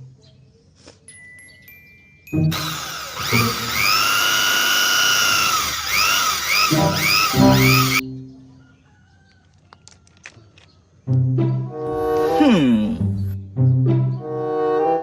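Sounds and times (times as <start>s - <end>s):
drill motor whining: 2.4s - 8.0s.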